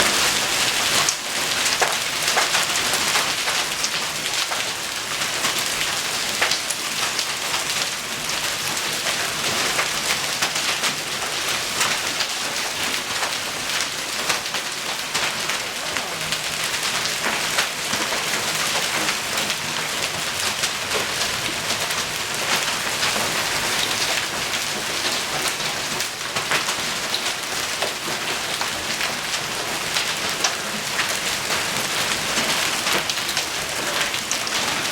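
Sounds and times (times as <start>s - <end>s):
hailstones striking hard surfaces: 0.0s - 7.8s
heavy rain and hail hissing: 0.0s - 34.9s.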